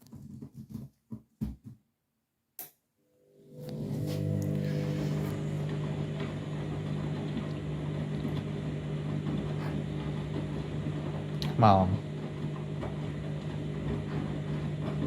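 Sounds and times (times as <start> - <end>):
washing machine humming: 3.2 - 15.0.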